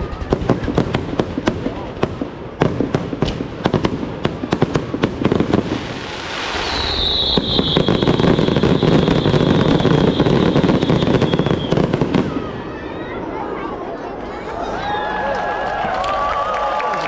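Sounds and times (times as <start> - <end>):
firework bangs and cracks: 0.0 - 12.7
firework whistle: 5.9 - 12.6.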